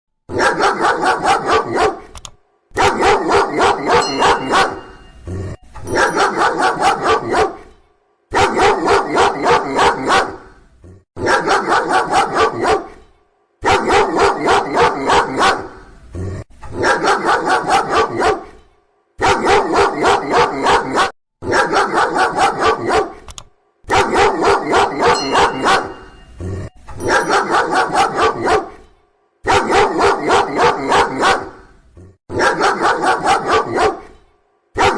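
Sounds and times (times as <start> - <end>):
dog barking loudly: 0.3 - 2.1, 2.7 - 5.1, 5.8 - 7.7, 8.3 - 10.6, 11.2 - 13.0, 13.6 - 15.9, 16.7 - 18.6, 19.2 - 23.3, 23.9 - 26.2, 27.0 - 28.8, 29.4 - 31.7, 32.3 - 34.2.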